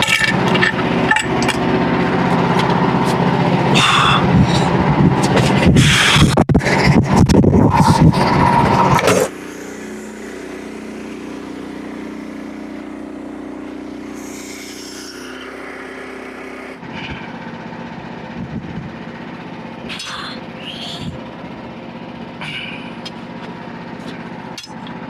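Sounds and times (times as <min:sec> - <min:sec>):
small gasoline engine running: 0:00.0 - 0:25.0.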